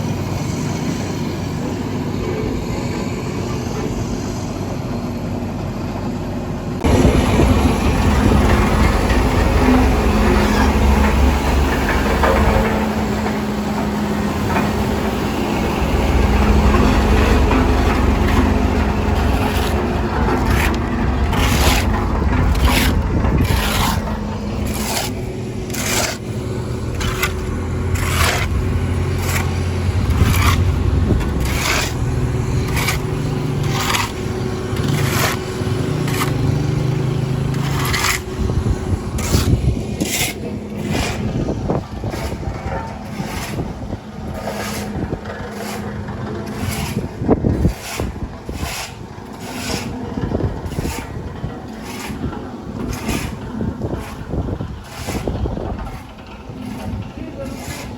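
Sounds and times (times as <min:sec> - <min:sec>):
construction machinery engine rumbling: 0:00.0 - 0:57.9
short scraping strokes: 0:16.2 - 0:26.3, 0:26.9 - 0:36.6, 0:37.4 - 0:50.0, 0:50.7 - 0:57.9.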